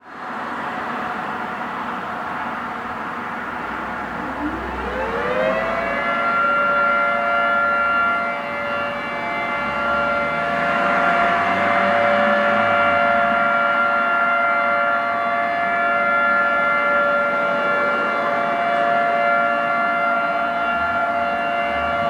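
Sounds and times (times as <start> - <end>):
dual-tone warning siren: 3.4 - 22.0.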